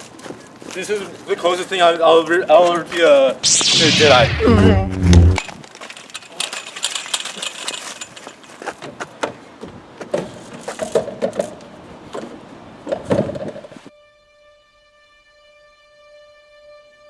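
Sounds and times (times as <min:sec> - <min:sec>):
short vocal sounds: 0:03.4 - 0:05.5.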